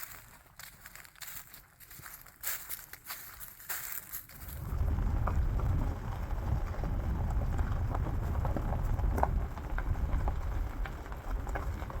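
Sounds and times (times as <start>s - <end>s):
light crackles and ticks: 0.6s - 12.0s
wind buffeting microphone: 4.3s - 12.0s.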